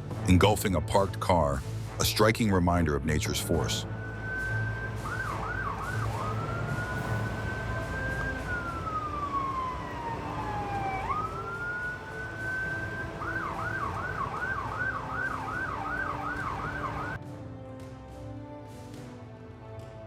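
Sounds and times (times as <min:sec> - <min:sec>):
steady rushing noise: 0:03.5 - 0:17.2
emergency siren wailing and yelping: 0:03.8 - 0:17.2.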